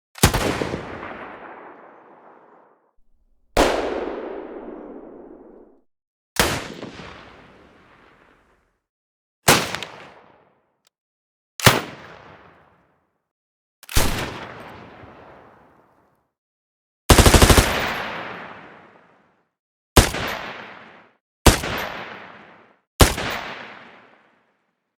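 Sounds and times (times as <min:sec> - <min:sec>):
single gunshots echoing: 0:00.3 - 0:05.8
automatic gunfire burst: 0:03.0 - 0:05.8, 0:17.1 - 0:17.9.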